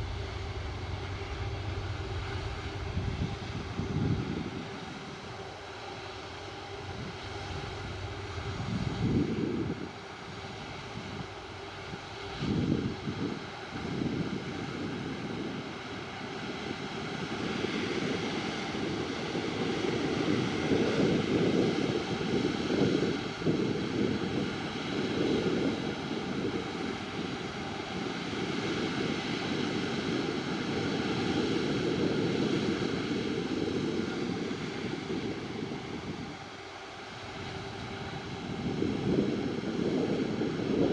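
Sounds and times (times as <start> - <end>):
jet engines whining: 0.0 - 40.9
low gusty rumbles: 0.0 - 40.9.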